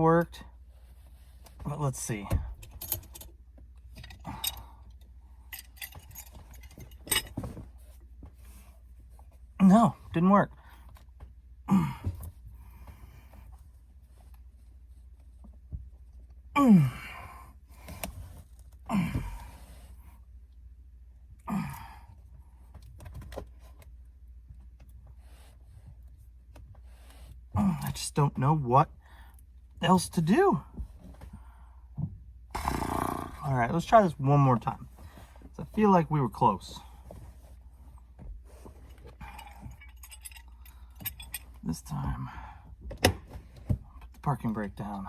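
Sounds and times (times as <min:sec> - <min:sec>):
light metallic clicks and clinks: 0:04.0 - 0:07.4, 0:38.8 - 0:41.6
man sighing heavily: 0:11.7 - 0:12.8, 0:16.6 - 0:17.5, 0:18.9 - 0:19.7, 0:21.5 - 0:22.1.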